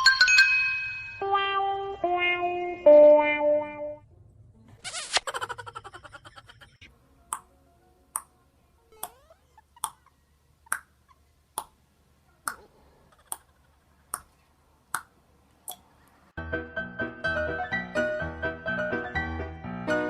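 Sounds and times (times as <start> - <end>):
piano music: 16.4 - 20.0.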